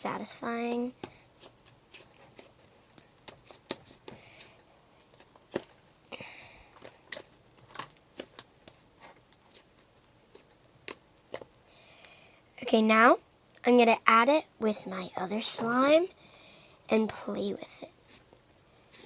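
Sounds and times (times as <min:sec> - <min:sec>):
slime squishing: 0:01.4 - 0:05.8, 0:06.8 - 0:11.5.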